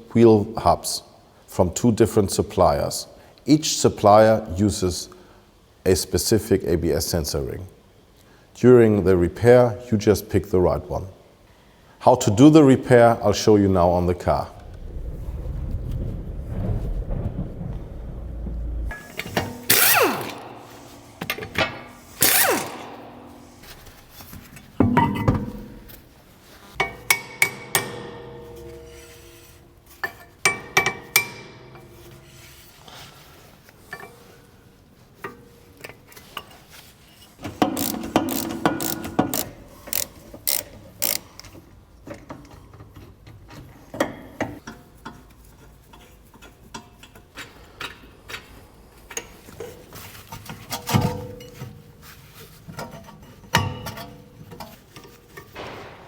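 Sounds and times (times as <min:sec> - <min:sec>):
hand tools clanking on metal: 0:18.9 - 0:25.8.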